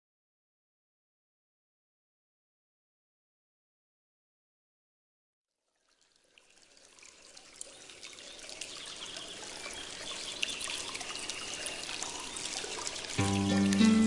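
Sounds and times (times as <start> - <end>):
trickling water: 5.5 - 14.0.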